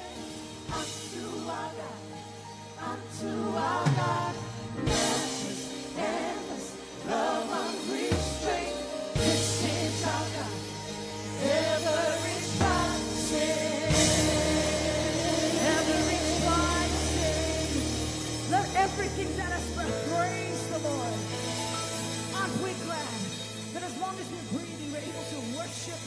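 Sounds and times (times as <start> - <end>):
worship band with singing: 0.0 - 26.0
sustained bass line: 8.2 - 21.5.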